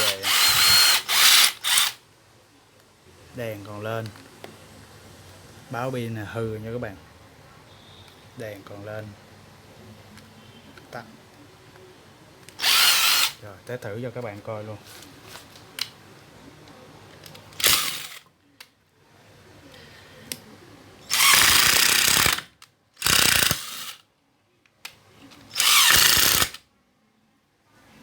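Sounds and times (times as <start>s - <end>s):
cordless drill whirring: 0.0s - 2.0s, 12.6s - 13.4s, 17.6s - 18.2s, 21.1s - 24.0s, 25.5s - 26.6s.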